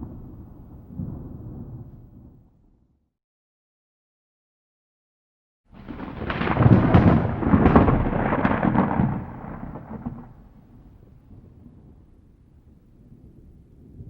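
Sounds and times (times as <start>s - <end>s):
thunderclap crackling crash: 0.0s - 2.6s, 5.7s - 12.1s.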